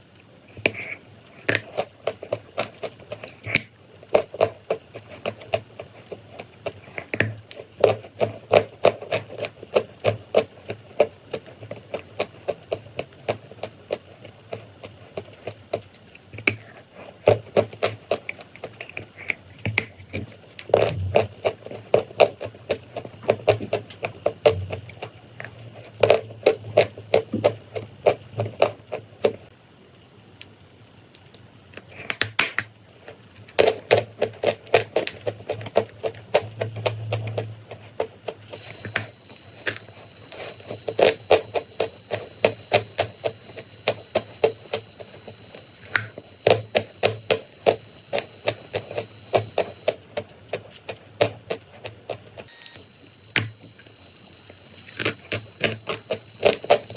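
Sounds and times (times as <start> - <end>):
chalk crunching while chewed: 0.5 - 29.5.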